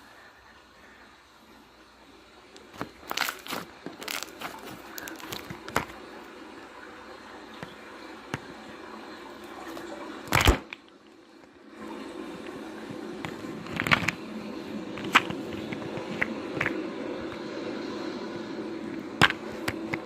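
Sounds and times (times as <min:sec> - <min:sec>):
crackling and crinkling clicks: 0:02.5 - 0:06.6, 0:07.2 - 0:11.6, 0:12.4 - 0:17.6.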